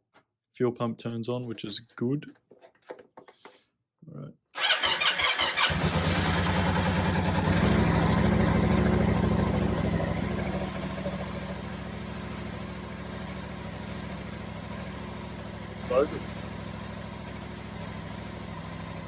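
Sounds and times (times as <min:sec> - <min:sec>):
motorcycle engine idling: 0:04.6 - 0:19.0.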